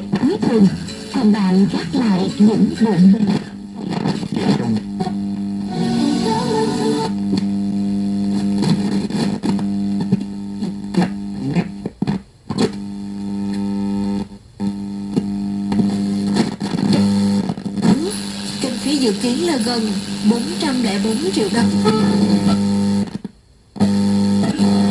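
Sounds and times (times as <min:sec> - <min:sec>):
music through radio speaker: 0:00.0 - 0:07.5, 0:15.7 - 0:23.1, 0:24.0 - 0:24.9
steady hum: 0:13.1 - 0:23.1.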